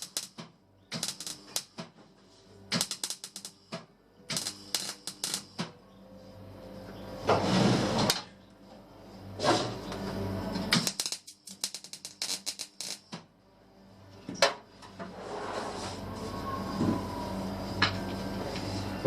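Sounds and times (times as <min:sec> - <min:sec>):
rapid welding clicks: 0:00.0 - 0:01.9, 0:02.7 - 0:05.7, 0:10.7 - 0:13.2
sharp welding crack: 0:00.0 - 0:01.9, 0:02.7 - 0:05.7, 0:10.7 - 0:13.3
tack welding crackling bursts: 0:00.0 - 0:01.9, 0:02.7 - 0:05.7, 0:10.7 - 0:13.3.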